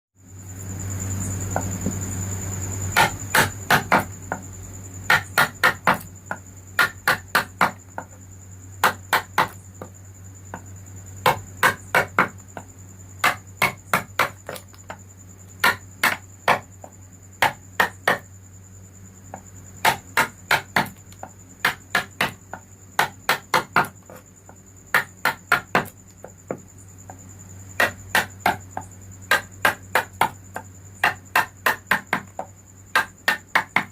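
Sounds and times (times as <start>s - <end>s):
mallet striking chisel: 3.0s - 4.1s, 19.8s - 21.0s.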